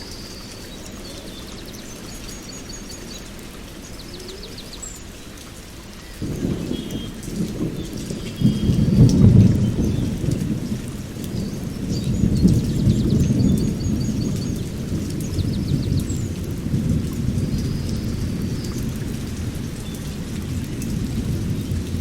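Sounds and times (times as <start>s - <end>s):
steady rain: 0.0s - 22.0s
thunder rumbling: 6.2s - 22.0s.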